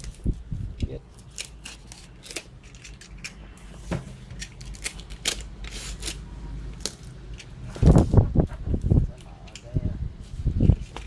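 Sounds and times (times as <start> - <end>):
steady low hum: 0.0 - 11.0
packaging crinkling and clicking: 4.3 - 8.0.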